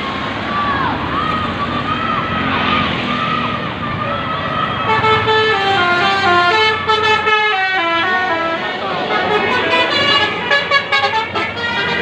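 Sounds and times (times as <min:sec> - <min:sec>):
passing traffic rumble: 0:00.0 - 0:12.0
bus air horn playing tune: 0:04.8 - 0:12.0.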